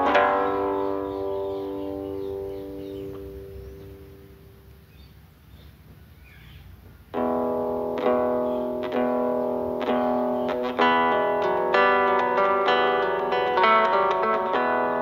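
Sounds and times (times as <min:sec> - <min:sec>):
solo acoustic guitar: 0:07.1 - 0:15.0.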